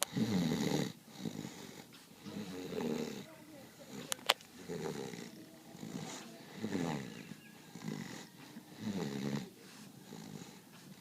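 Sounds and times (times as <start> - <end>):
goat snoring: 0.0 - 11.0.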